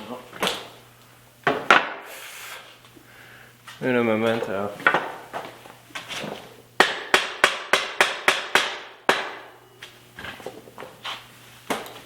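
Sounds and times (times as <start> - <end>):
hammer strikes on metal: 6.8 - 9.5.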